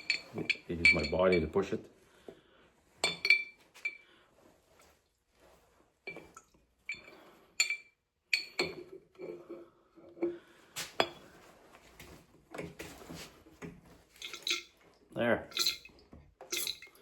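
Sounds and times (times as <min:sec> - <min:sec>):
metal clinking against glass: 0:00.0 - 0:01.6, 0:03.0 - 0:04.0, 0:06.1 - 0:09.3, 0:14.2 - 0:14.8, 0:15.5 - 0:17.0.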